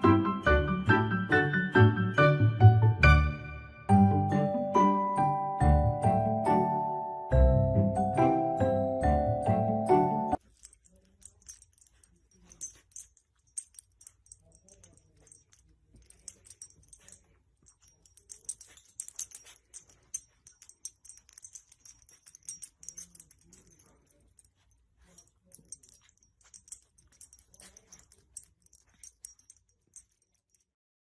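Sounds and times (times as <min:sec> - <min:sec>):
dog claws clicking: 0:10.4 - 0:30.7.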